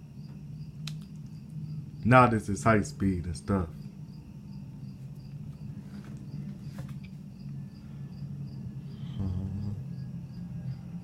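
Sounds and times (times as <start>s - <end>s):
ceiling fan motor humming: 0.0s - 11.0s.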